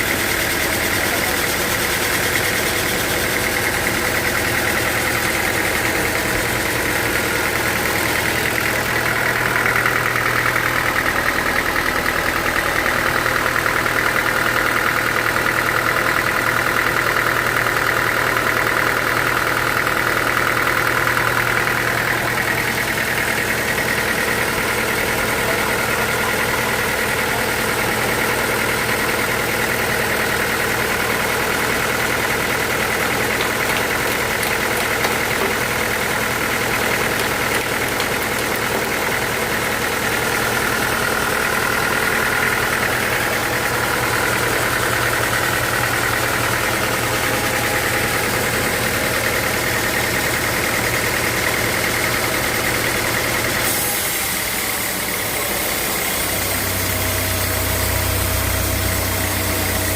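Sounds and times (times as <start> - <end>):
sawmill machine hum: 0.0 - 59.9.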